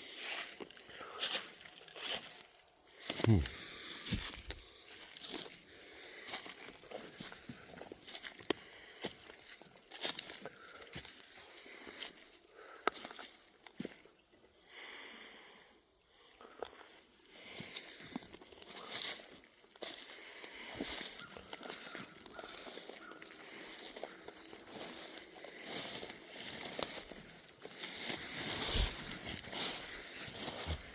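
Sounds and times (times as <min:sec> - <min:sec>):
footsteps crunching through dry leaves: 0:00.0 - 0:12.2, 0:18.8 - 0:30.9
high-pitched hiss: 0:24.8 - 0:30.9.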